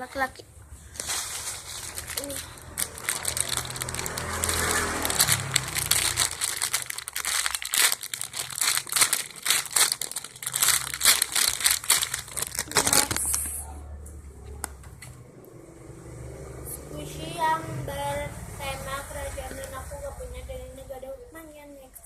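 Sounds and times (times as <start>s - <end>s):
plastic wrapping crinkling: 0.8s - 13.6s.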